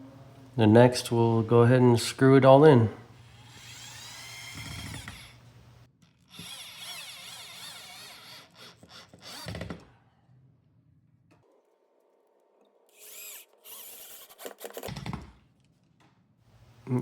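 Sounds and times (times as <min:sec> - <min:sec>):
power drill driving screws: 0:03.2 - 0:05.4, 0:06.0 - 0:09.9, 0:12.9 - 0:15.1.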